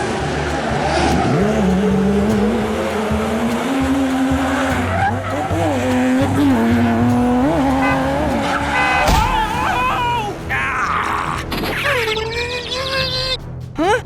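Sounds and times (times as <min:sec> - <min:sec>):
car engine revving: 0:00.0 - 0:12.1
high wavering squeals: 0:00.0 - 0:13.4
sharp hit: 0:09.0 - 0:11.9.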